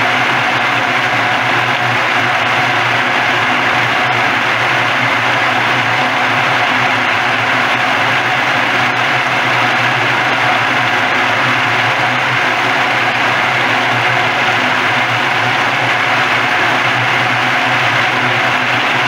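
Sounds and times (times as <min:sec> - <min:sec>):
machine churning noise: 0:00.0 - 0:19.0
motor hum: 0:00.0 - 0:19.0.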